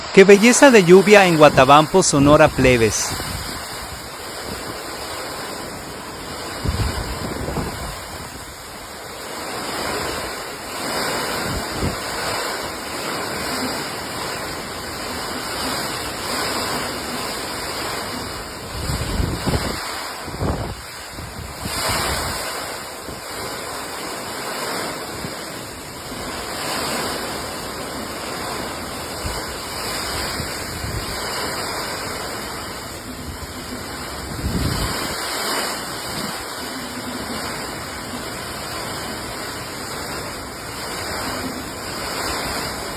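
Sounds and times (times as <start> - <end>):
steady rain falling: 0.0 - 42.9
wind buffeting microphone: 3.1 - 4.8, 5.8 - 8.7, 11.3 - 12.2, 18.2 - 23.5, 29.2 - 36.6.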